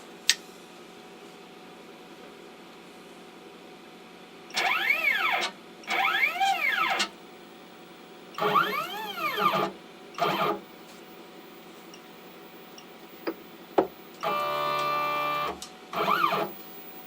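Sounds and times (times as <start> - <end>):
stepper motors whining: 4.5 - 7.1, 8.4 - 10.8, 14.2 - 17.0.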